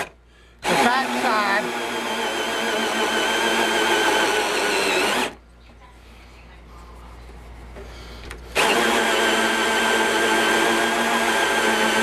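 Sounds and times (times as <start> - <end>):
electric drill boring hole: 0.0 - 5.4, 8.6 - 12.0.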